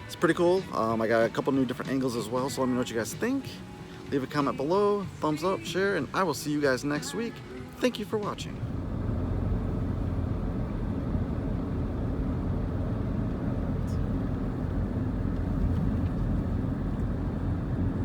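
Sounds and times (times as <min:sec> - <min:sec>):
monorail low rumble and hum: 0:08.4 - 0:18.0.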